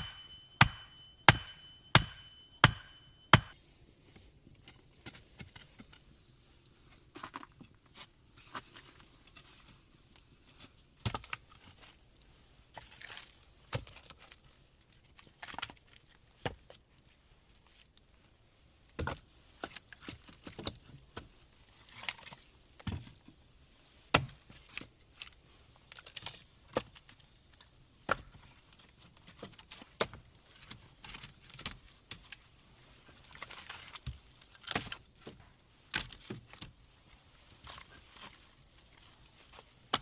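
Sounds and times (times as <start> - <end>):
wooden sticks knocking: 0.0 - 3.5.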